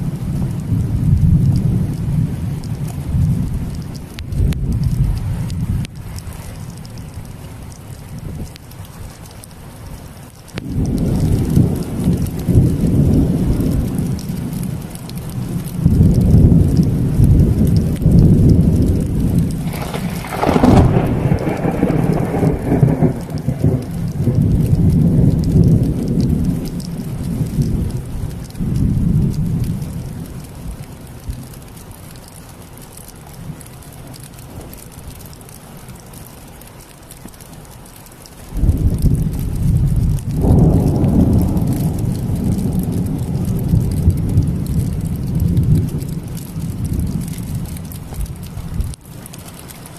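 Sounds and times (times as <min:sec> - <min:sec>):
thunder rumbling: 0:00.0 - 0:05.9, 0:10.5 - 0:32.4, 0:38.4 - 0:49.0
steady rain: 0:00.0 - 0:49.9
sharp thunder crack: 0:15.8 - 0:26.7, 0:38.6 - 0:47.3.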